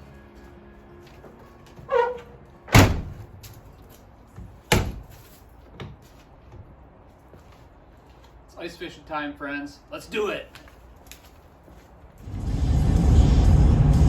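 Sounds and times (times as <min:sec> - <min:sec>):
short squeal: 0:01.9 - 0:02.3
heavy slams: 0:02.7 - 0:03.2.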